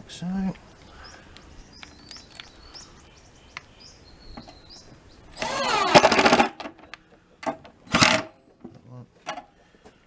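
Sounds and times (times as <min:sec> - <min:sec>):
birds chirping: 0:00.2 - 0:06.2
power drill driving a screw: 0:05.4 - 0:06.6.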